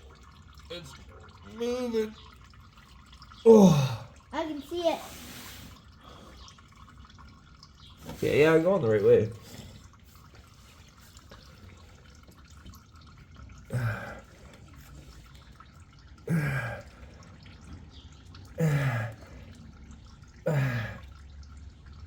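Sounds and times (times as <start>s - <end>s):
person grunting with strain: 3.5s - 4.1s, 13.7s - 14.2s, 16.3s - 16.9s, 18.6s - 19.2s, 20.5s - 21.0s.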